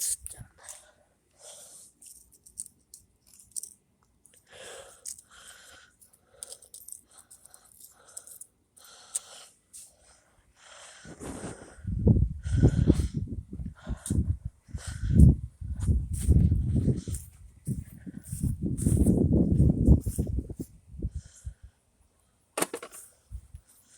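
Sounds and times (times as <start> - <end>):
small plastic pieces clicking and rattling: 2.0 - 5.6, 6.3 - 8.5.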